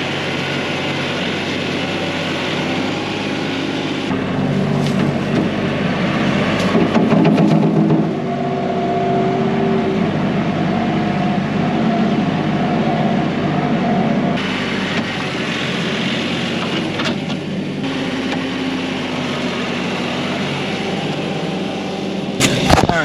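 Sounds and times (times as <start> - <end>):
tractor diesel engine running: 0.0 - 23.0
loader bucket skimming soil: 2.4 - 8.5.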